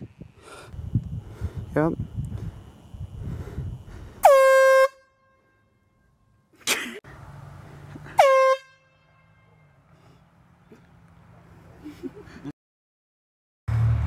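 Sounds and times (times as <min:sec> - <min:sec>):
air horn blasts: 0:04.2 - 0:06.0, 0:08.1 - 0:10.1.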